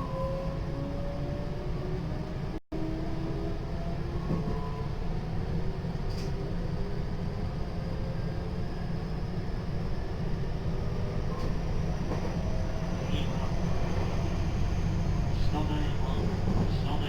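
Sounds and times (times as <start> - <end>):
wheels rumbling on rail: 8.4 - 17.0.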